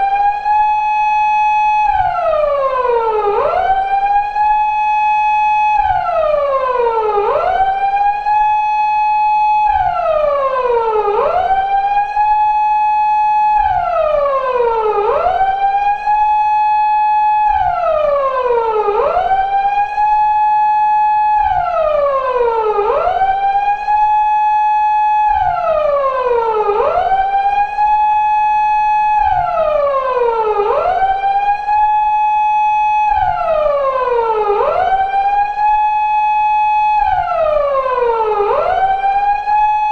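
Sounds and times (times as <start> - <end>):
police siren wailing: 0.0 - 39.9.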